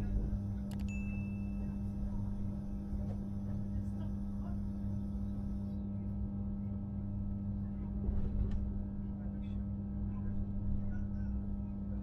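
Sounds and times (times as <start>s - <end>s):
train carriage hum: 0.0s - 12.0s
low rumble: 7.0s - 11.0s.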